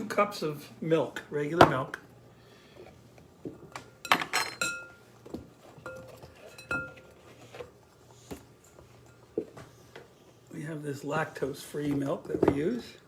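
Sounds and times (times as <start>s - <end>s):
utensils and dishes clinking: 3.6s - 7.7s.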